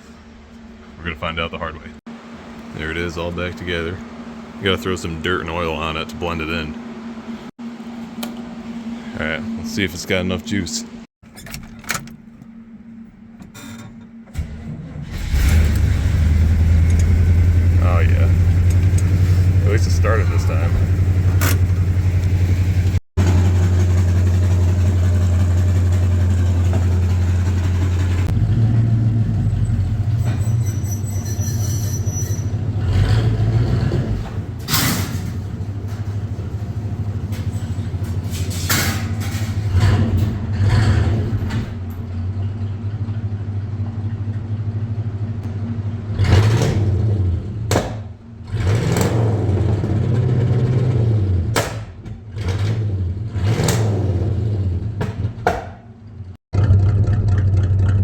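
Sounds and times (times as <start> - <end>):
truck engine humming: 15.2 - 40.7, 41.7 - 46.2.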